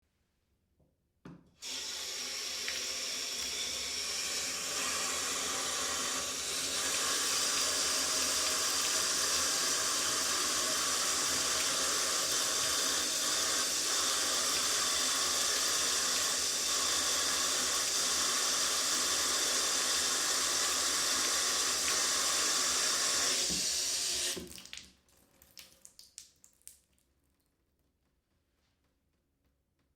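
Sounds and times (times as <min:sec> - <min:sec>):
tap water filling bathtub: 0:01.6 - 0:27.1
water dripping and splashing: 0:24.4 - 0:27.2.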